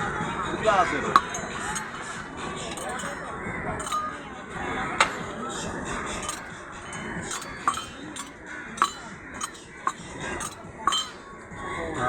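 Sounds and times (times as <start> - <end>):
utensils clinking: 1.0 - 5.2, 6.2 - 11.3.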